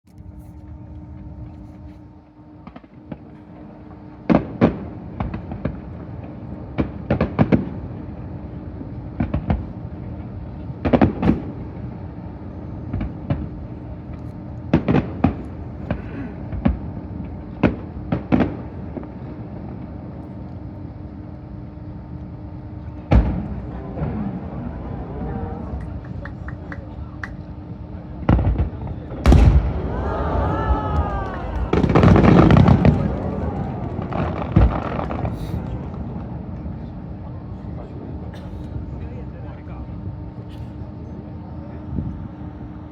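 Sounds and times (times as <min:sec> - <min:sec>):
steady low hum: 0:00.1 - 0:42.9
fireworks booming: 0:23.0 - 0:25.2, 0:28.2 - 0:36.8.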